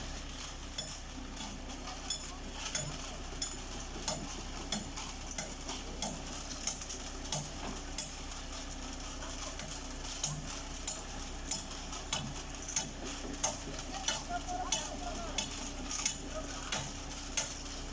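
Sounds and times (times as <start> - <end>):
concrete mixer low hum: 0.0 - 17.9.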